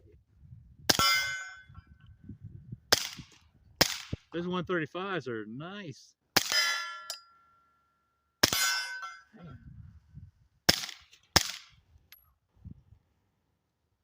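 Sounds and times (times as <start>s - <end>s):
metallic ringing: 0.9s - 2.0s, 6.5s - 9.4s
suppressed pistol shots: 2.9s - 4.2s, 10.7s - 11.8s.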